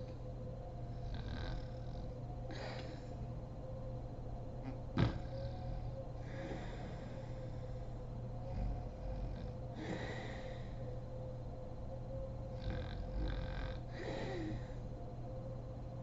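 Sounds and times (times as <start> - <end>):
steady background hum: 0.0 - 16.0
woman breathing heavily: 1.0 - 3.4, 4.7 - 11.2, 13.1 - 15.0.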